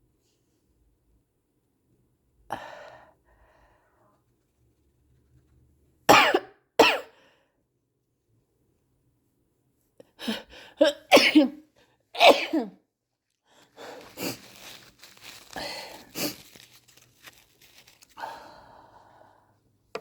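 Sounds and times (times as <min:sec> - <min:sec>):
person sneezing and coughing: 0:06.1 - 0:07.2, 0:10.8 - 0:11.6, 0:12.2 - 0:12.8
breathy sound: 0:13.6 - 0:19.5.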